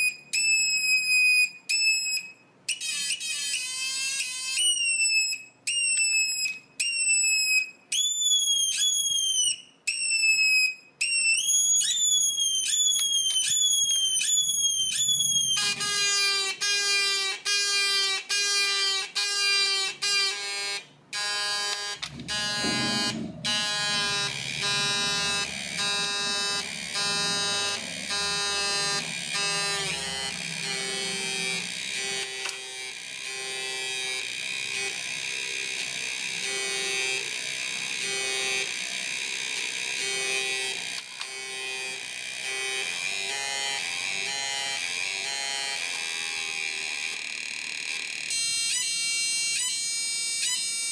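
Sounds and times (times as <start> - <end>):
low pulsing electronic warble: 22.0 - 32.4.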